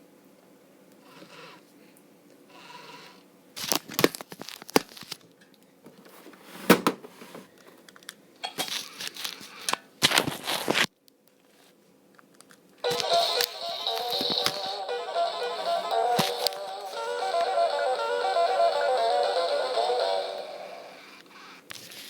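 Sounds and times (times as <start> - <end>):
rustling handling noise: 12.8 - 14.9, 15.5 - 17.3.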